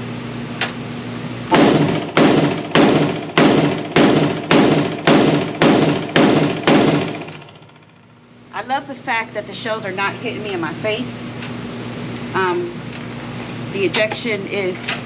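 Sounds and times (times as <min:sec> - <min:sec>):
rifle shots with echo: 0:01.5 - 0:07.9.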